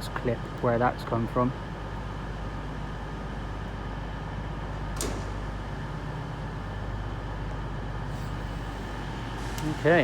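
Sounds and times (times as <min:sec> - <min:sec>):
railway station hum: 0:00.0 - 0:10.0.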